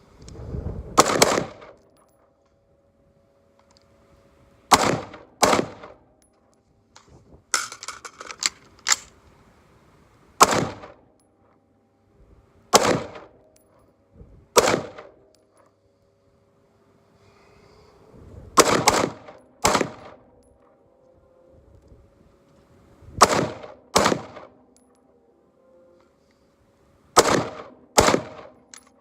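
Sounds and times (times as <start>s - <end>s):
loud single gunshots: 1.0s - 1.7s, 4.7s - 5.9s, 10.4s - 11.0s, 12.7s - 13.3s, 14.6s - 15.1s, 18.6s - 20.1s, 23.2s - 24.5s, 27.2s - 28.5s.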